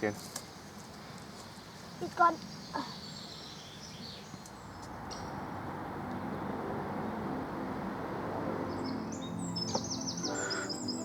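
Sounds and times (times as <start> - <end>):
small bird chirping: 8.7 - 11.0.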